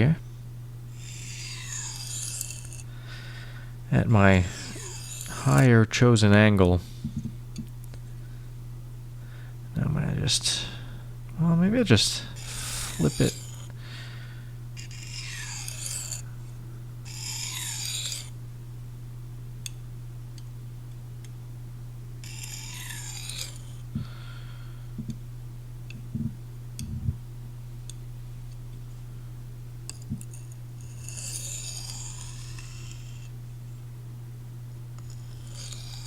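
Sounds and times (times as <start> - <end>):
steady low hum: 0.0 - 36.0
knife scraping on sharpening stone: 1.0 - 2.9, 4.5 - 5.6, 12.4 - 13.7, 14.8 - 16.2, 17.0 - 18.3, 22.2 - 23.8, 29.9 - 33.3, 35.0 - 36.0.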